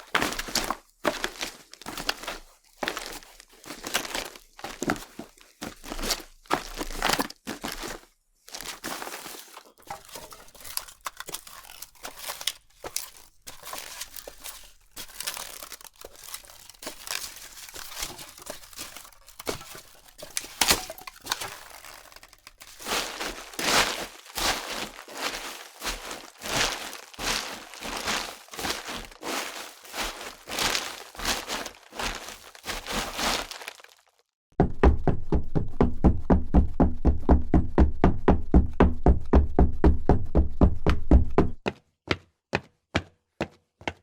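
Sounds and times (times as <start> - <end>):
fine crunching and rustling: 0.0 - 34.2
footsteps crunching on loose surface: 0.0 - 34.2.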